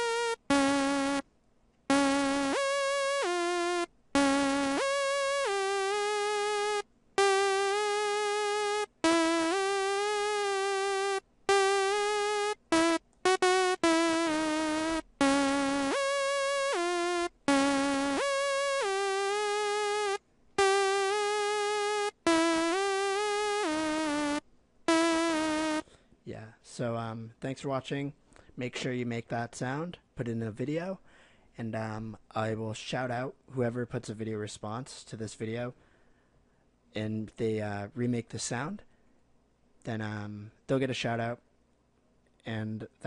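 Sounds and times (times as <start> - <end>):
synth lead sliding notes: 0.0 - 1.2, 1.9 - 25.8.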